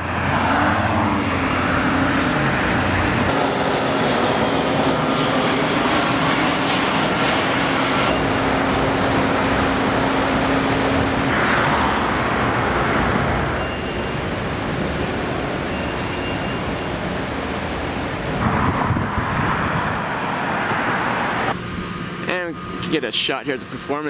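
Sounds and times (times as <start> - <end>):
engine drone: 0.0 - 24.0
motor traffic rushing: 0.0 - 24.0.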